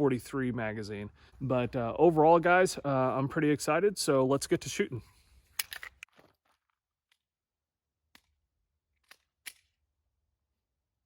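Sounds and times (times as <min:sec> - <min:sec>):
pistol loading clicks: 0:05.5 - 0:06.1, 0:08.1 - 0:09.8.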